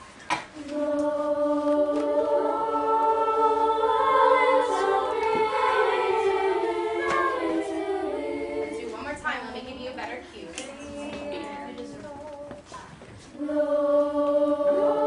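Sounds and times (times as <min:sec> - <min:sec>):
choir singing held chords: 0:00.5 - 0:09.1, 0:13.3 - 0:15.0.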